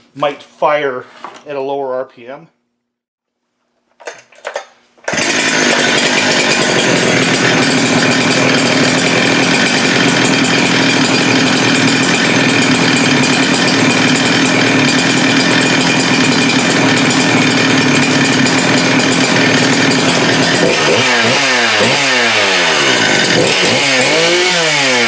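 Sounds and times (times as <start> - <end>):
chainsaw engine running: 5.1 - 25.0.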